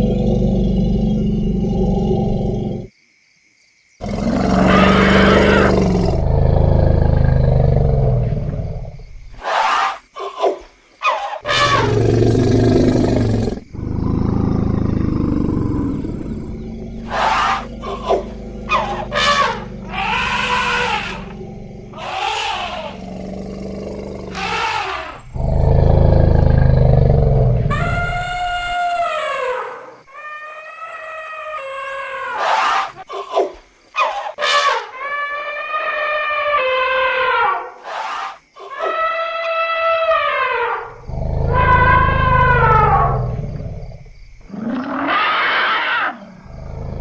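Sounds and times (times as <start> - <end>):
elephants rumbling roars: 4.0 - 9.0, 11.5 - 28.8, 40.0 - 47.0
elephant trumpeting: 11.1 - 12.1, 16.6 - 23.1, 24.2 - 25.4, 27.7 - 29.8.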